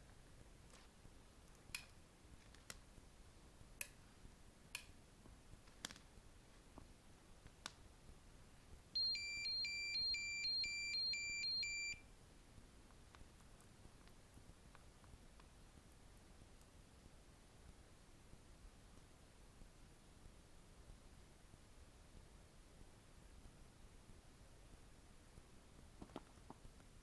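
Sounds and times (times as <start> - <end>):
car alarm beeping tune: 9.0 - 12.0.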